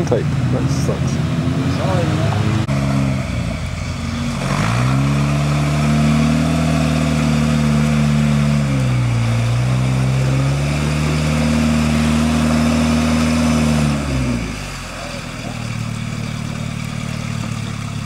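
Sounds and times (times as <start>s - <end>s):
truck engine revving: 0.0s - 18.0s.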